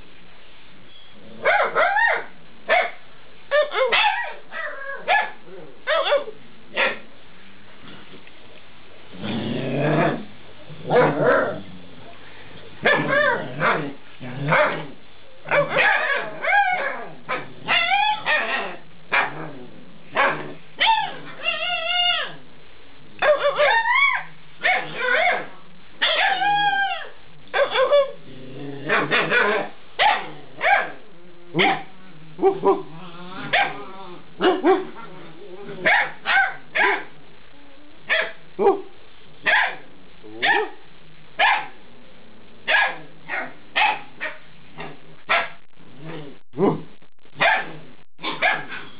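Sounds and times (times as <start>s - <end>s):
puppies yipping and howling: 26.1s - 28.1s.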